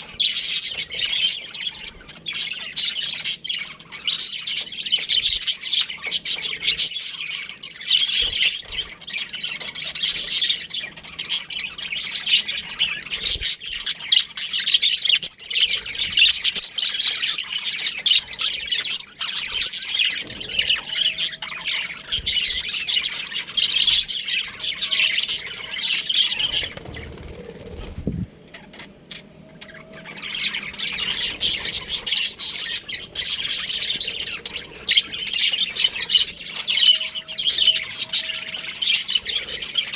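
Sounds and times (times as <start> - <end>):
budgerigars chirping and chattering: 0.0 - 39.9.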